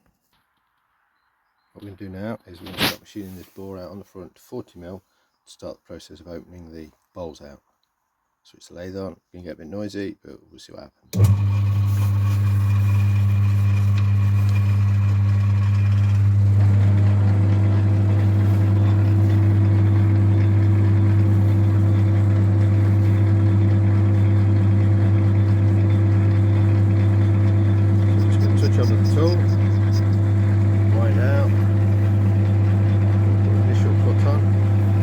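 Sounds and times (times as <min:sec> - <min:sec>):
metal lathe humming: 0:11.2 - 0:35.0.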